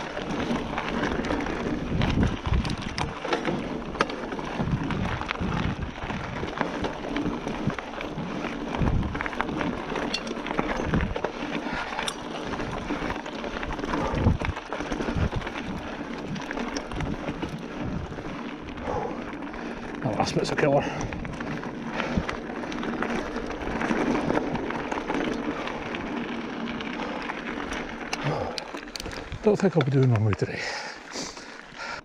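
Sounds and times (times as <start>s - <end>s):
bike clicks and rattles: 0.0s - 32.0s
bike tyres rumbling on trail: 0.0s - 32.0s
wind on microphone: 1.5s - 3.2s, 4.4s - 6.7s, 7.6s - 9.3s, 13.7s - 19.1s.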